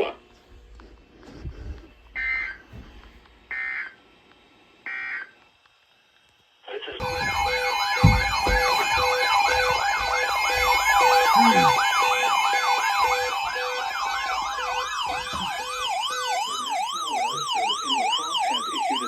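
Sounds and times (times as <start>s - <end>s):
electronic siren wailing: 2.1s - 2.7s, 3.5s - 4.0s, 7.0s - 19.0s
beeping tone: 7.0s - 19.0s
steady tones: 7.0s - 19.0s.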